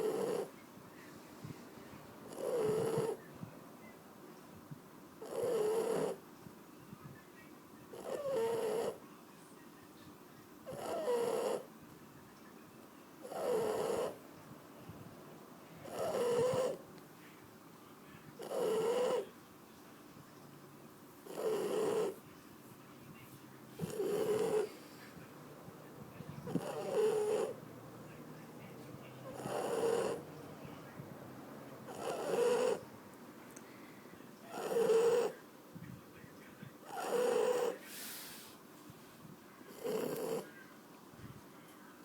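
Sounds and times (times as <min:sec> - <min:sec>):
dog snoring: 0:00.0 - 0:00.5, 0:02.3 - 0:03.2, 0:05.2 - 0:06.2, 0:07.9 - 0:09.0, 0:10.6 - 0:11.7, 0:13.2 - 0:14.2, 0:15.8 - 0:16.8, 0:18.4 - 0:19.3, 0:21.2 - 0:22.3, 0:23.7 - 0:25.2, 0:26.2 - 0:30.6, 0:31.8 - 0:32.9, 0:34.4 - 0:35.4, 0:36.8 - 0:38.5, 0:39.7 - 0:40.5
dog breathing: 0:15.8 - 0:16.8, 0:21.2 - 0:22.3, 0:23.7 - 0:27.9, 0:28.8 - 0:31.0, 0:31.8 - 0:32.9, 0:33.6 - 0:35.4, 0:36.8 - 0:40.5.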